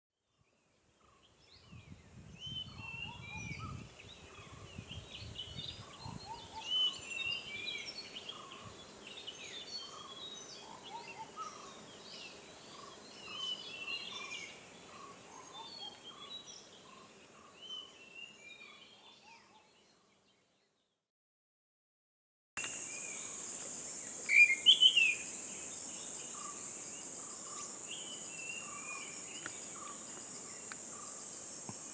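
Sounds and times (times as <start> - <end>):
birds chirping and whistling: 24.3 - 25.3.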